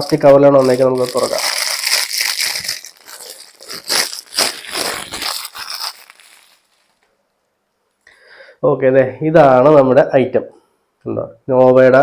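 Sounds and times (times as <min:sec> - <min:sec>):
plastic packaging crinkling: 0:00.0 - 0:07.1.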